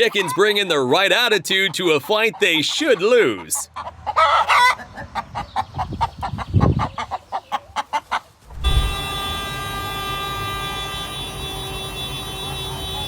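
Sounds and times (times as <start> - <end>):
chickens clucking: 0.0 - 8.4
low thud: 8.5 - 9.5.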